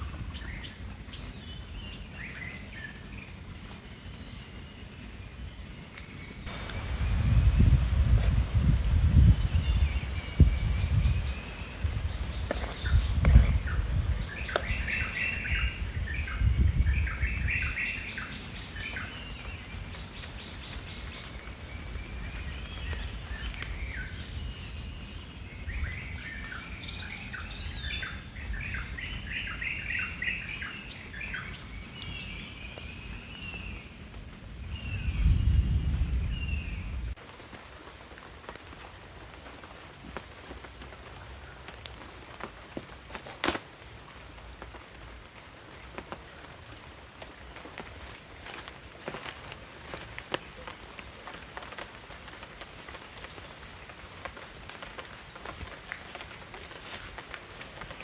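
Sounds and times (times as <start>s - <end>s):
birds chirping and calling: 6.3s - 25.2s.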